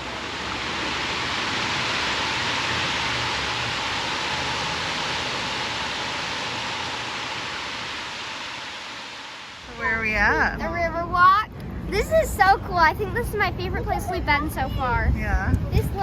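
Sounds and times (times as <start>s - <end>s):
falling water hiss: 0.0s - 12.6s.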